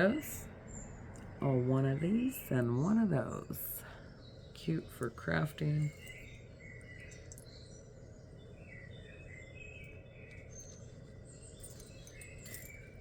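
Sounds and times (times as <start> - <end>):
low steady hum: 0.0 - 13.0
faint bird chirps: 3.2 - 13.0.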